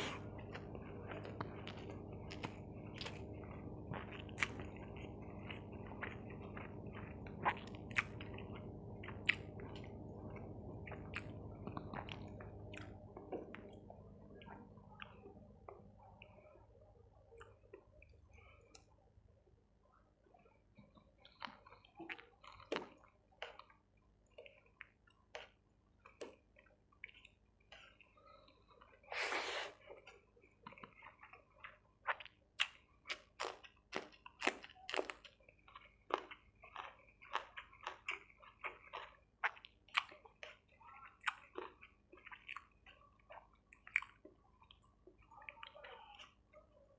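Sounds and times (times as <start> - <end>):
wet chewing and smacking: 0.0 - 19.2, 20.2 - 46.9
low hum: 0.0 - 20.1.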